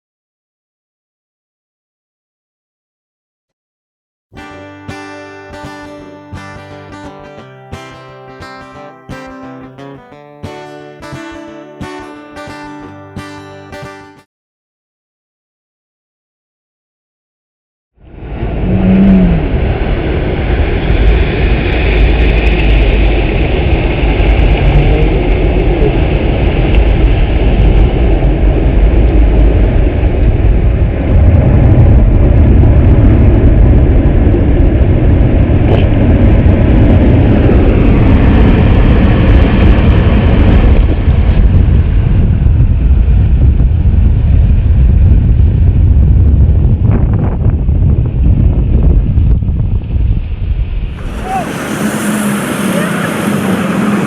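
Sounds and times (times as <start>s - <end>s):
big surf roaring: 4.4s - 14.2s, 18.0s - 54.0s
wind buffeting microphone: 18.1s - 54.0s.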